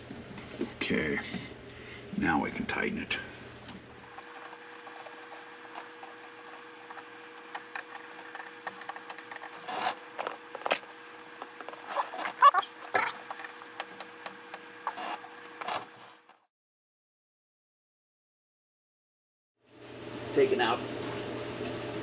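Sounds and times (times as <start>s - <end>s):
hand tool clicks and rattles: 3.7s - 16.4s.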